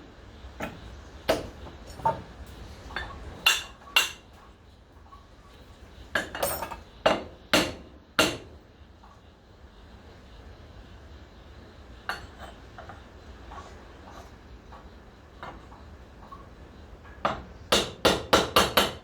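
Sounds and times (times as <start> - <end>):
hammer tapping on metal: 17.2 - 19.0.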